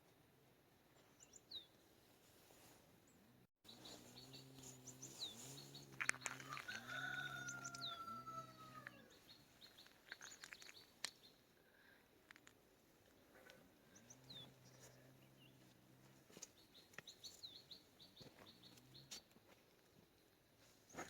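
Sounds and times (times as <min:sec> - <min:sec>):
birds chirping: 0:03.0 - 0:12.0, 0:13.0 - 0:20.0.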